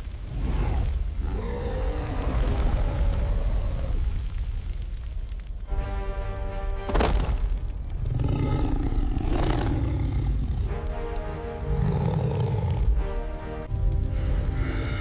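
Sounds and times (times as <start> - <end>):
dramatic background music: 0.0 - 15.0
monster roar: 0.3 - 4.2, 8.0 - 10.7.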